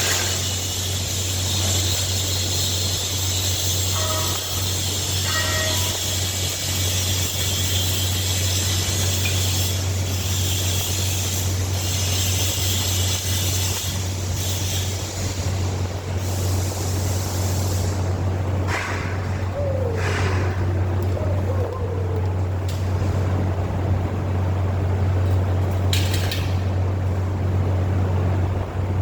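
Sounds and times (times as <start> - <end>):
welding arc hissing: 0.0 - 21.2
welding machine hum: 0.0 - 29.0.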